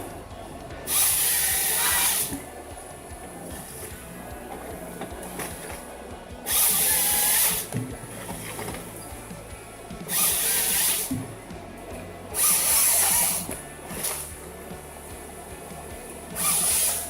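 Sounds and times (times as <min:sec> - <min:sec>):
background music: 0:00.0 - 0:17.0
power saw cutting wood: 0:00.9 - 0:02.4, 0:06.5 - 0:09.2, 0:10.0 - 0:11.3, 0:12.4 - 0:14.3, 0:16.1 - 0:17.0.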